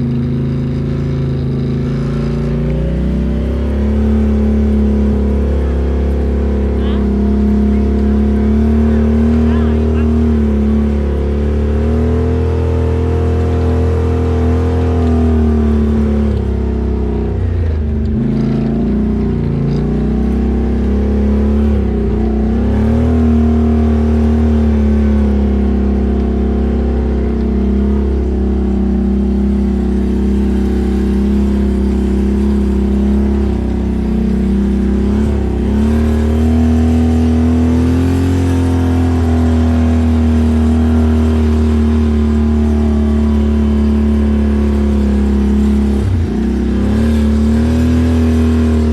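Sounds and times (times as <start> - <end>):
atv engine running: 0.0 - 48.9.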